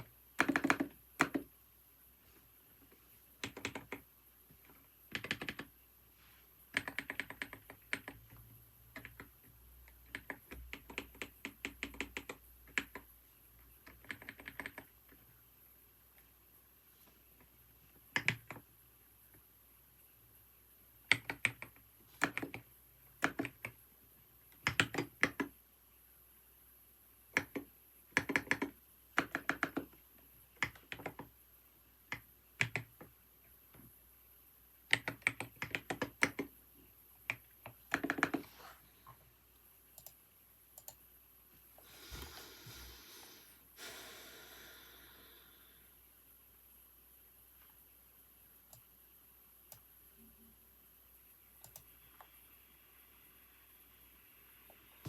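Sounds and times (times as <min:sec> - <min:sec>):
computer keyboard typing: 0:00.0 - 0:01.5, 0:03.4 - 0:05.7, 0:06.7 - 0:13.1, 0:13.8 - 0:15.2, 0:18.1 - 0:18.7, 0:21.1 - 0:23.8, 0:24.5 - 0:25.6, 0:27.3 - 0:30.0, 0:30.6 - 0:31.4, 0:32.1 - 0:33.1, 0:34.9 - 0:36.6, 0:37.2 - 0:38.5, 0:40.8 - 0:41.0, 0:51.6 - 0:52.3.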